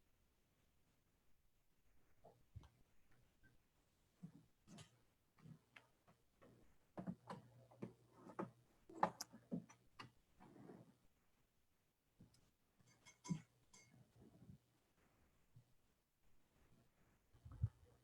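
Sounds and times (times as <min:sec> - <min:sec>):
faint clicks and knocks: 0:12.2 - 0:14.4.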